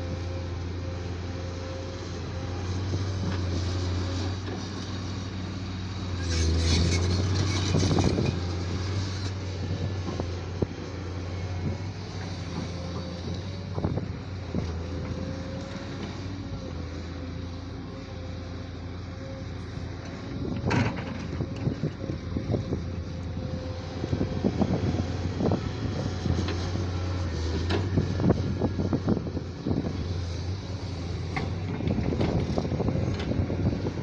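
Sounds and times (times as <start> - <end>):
diesel digger engine running: 0.0 - 34.0
digger bucket clanking: 20.4 - 22.0.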